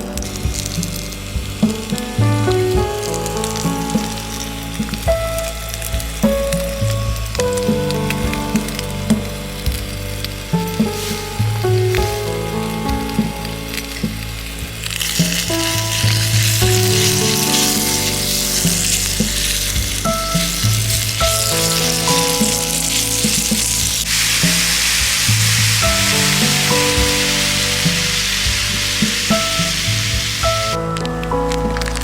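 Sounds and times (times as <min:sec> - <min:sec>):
melodic background music: 0:00.0 - 0:32.0
meat sizzling in a pan: 0:10.3 - 0:30.8.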